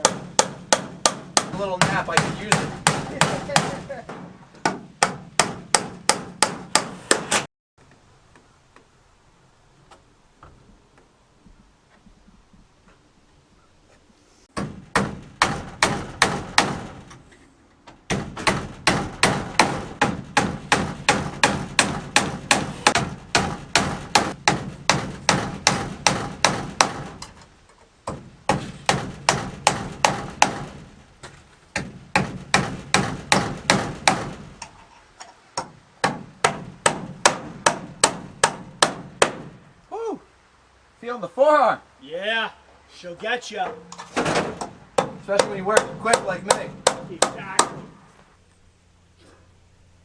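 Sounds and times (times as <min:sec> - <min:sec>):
hammer driving nails: 0:00.0 - 0:07.5, 0:14.5 - 0:17.2, 0:18.1 - 0:30.9, 0:31.7 - 0:34.8, 0:35.6 - 0:39.5, 0:43.9 - 0:48.0.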